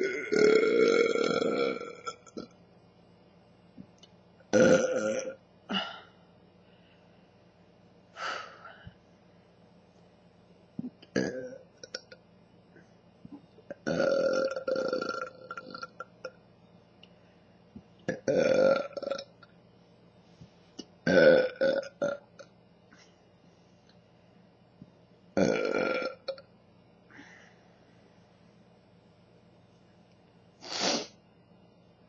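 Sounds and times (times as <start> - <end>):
woman burping deeply: 0.0 - 2.5, 4.5 - 6.1, 10.8 - 12.0, 13.7 - 16.4, 25.4 - 26.4.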